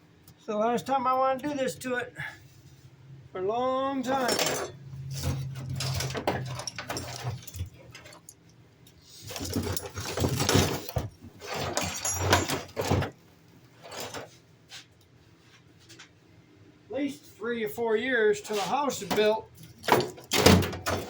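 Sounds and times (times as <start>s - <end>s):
objects clattering and rustling: 4.0s - 8.4s, 9.0s - 14.9s, 18.5s - 21.0s.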